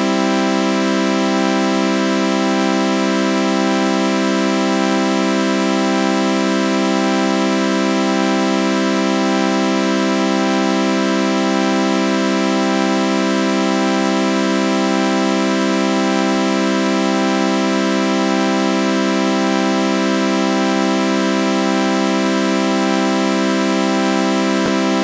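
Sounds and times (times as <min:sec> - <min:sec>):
synthesized chord with flanger: 0:24.5 - 0:25.0.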